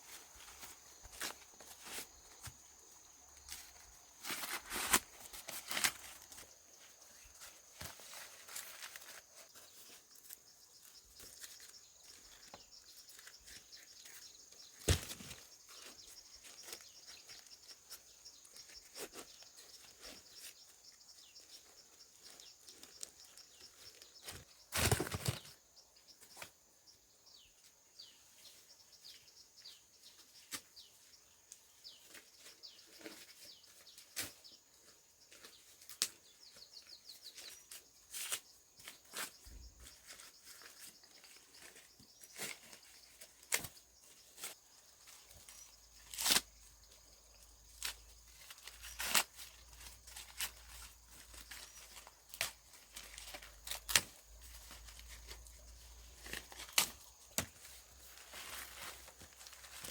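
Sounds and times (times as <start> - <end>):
corn stalks snapping and husks tearing: 4.2 - 6.5, 24.3 - 25.5, 35.8 - 36.2, 42.3 - 43.8, 46.0 - 46.5, 47.7 - 55.4, 56.1 - 59.9.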